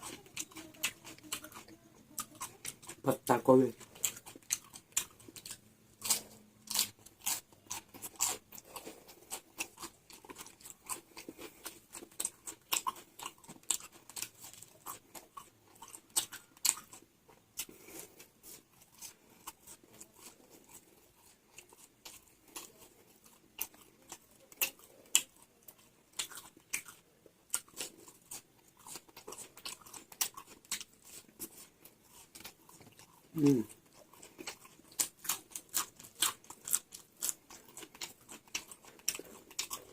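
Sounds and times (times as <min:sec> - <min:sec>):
person chewing crunchy vegetables: 0:00.0 - 0:39.9.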